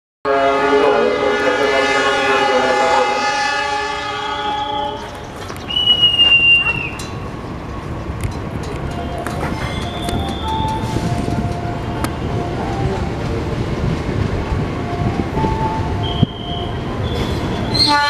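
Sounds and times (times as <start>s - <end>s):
locomotive air horn chord: 0.3s - 5.1s, 15.8s - 18.0s.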